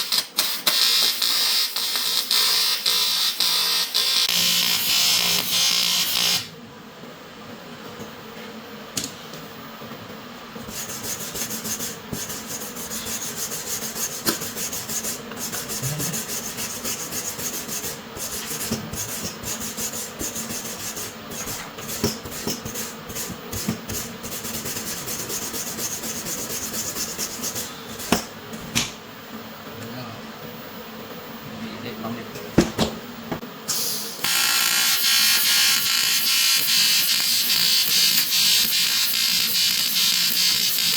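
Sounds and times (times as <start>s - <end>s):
loud hiss: 33.7s - 40.9s.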